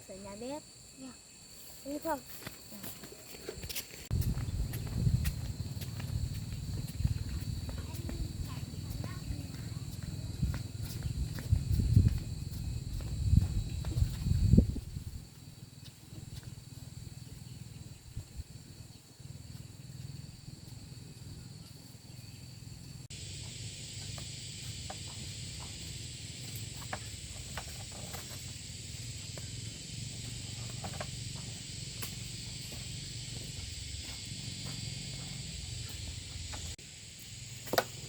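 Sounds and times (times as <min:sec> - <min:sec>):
insects shrilling: 0:21.0 - 0:38.0.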